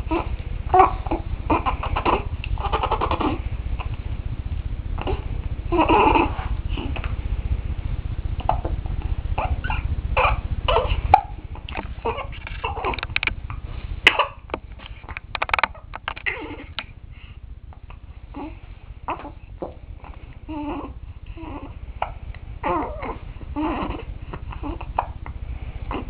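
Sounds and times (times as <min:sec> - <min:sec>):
low rumble: 0:00.0 - 0:26.0
baby whimpering and grunting: 0:05.0 - 0:07.0, 0:09.4 - 0:11.0, 0:12.0 - 0:13.1, 0:16.2 - 0:16.8, 0:18.3 - 0:19.4, 0:20.4 - 0:25.2.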